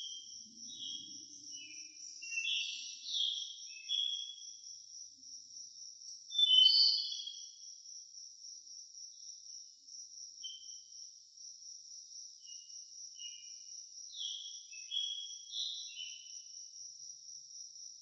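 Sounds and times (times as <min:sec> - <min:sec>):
bird chirps: 0:00.0 - 0:04.6, 0:06.3 - 0:07.5, 0:14.2 - 0:16.4.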